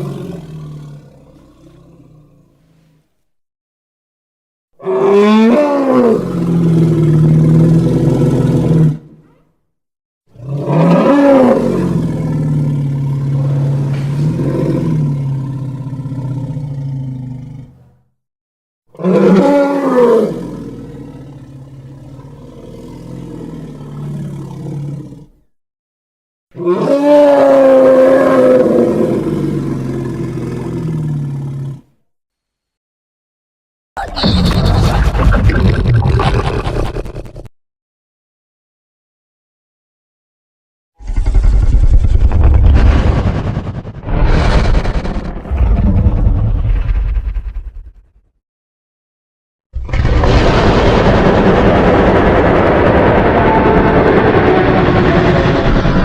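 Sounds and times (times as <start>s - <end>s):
creature roars and growls: 0.0s - 2.6s, 4.8s - 9.1s, 10.4s - 17.8s, 18.9s - 25.4s, 26.5s - 31.8s, 34.0s - 37.5s, 41.0s - 47.8s, 49.8s - 56.0s.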